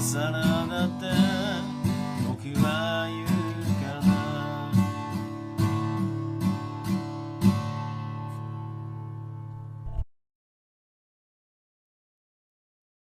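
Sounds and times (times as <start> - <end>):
acoustic guitar strumming: 0.0 - 9.8.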